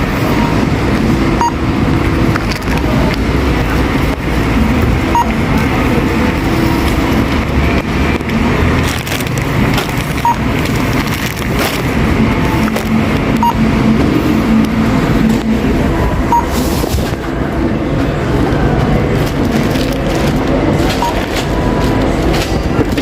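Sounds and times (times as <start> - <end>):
murmur of voices: 0.0 - 23.0
barcode scanner beep: 1.4 - 1.7, 5.1 - 7.3, 10.1 - 10.6, 12.4 - 15.5, 16.2 - 16.7, 20.9 - 21.3.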